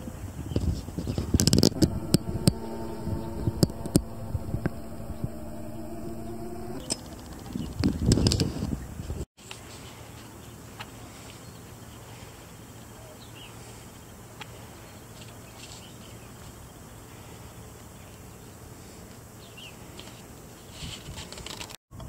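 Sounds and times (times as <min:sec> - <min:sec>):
outdoor background hum: 0:01.4 - 0:08.0.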